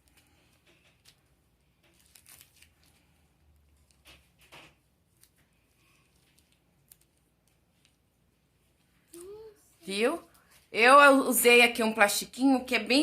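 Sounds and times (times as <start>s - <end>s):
plastic sheet rustling: 0.0s - 8.0s.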